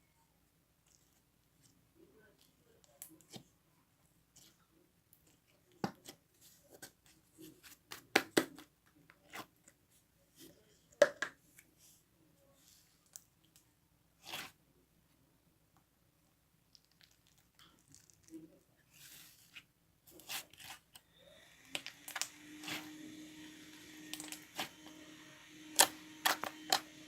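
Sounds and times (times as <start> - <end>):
slime squelch: 14.2 - 14.6, 16.6 - 27.0.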